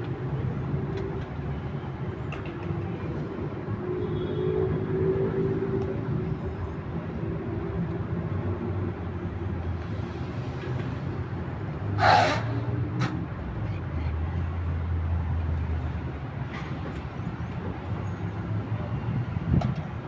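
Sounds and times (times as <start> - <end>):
city traffic rumble: 0.0 - 20.0
loud burst of noise: 12.0 - 12.6.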